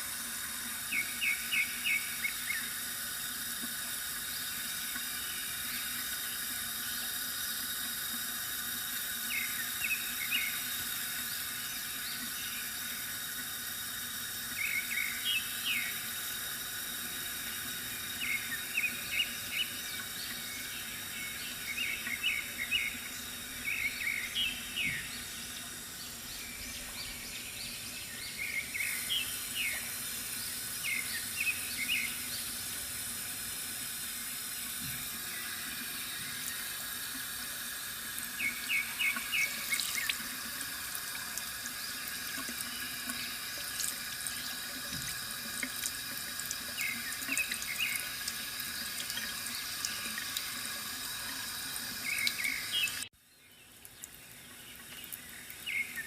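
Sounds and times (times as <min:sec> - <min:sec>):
water trickling from fountain: 0:00.0 - 0:56.0
birds chirping: 0:18.2 - 0:32.6, 0:38.3 - 0:40.3, 0:46.7 - 0:50.4, 0:52.0 - 0:56.0.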